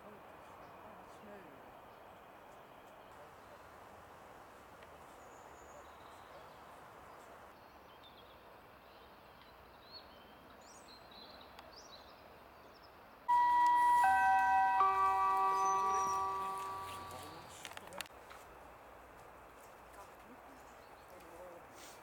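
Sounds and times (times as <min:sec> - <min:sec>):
outdoor background noise: 0:00.0 - 0:22.0
chime-like music notes: 0:13.3 - 0:17.5.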